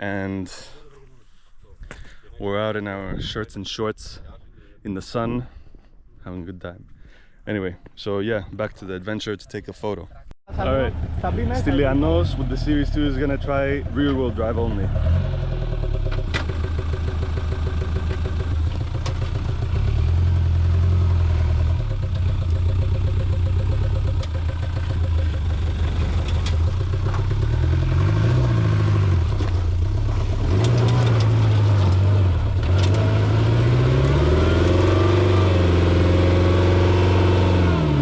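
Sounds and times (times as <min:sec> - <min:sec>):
truck engine revving: 0:10.6 - 0:38.0.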